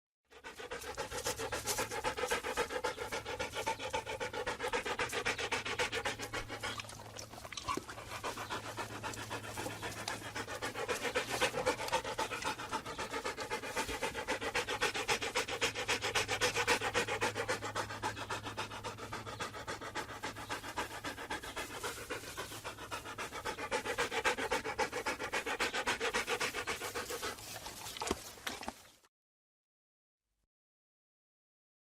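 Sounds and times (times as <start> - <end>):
dog panting: 0.3 - 28.9.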